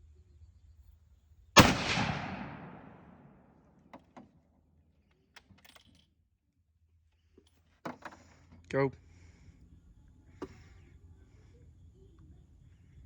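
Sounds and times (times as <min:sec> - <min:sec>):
rifle shot echoing: 0:01.6 - 0:03.5.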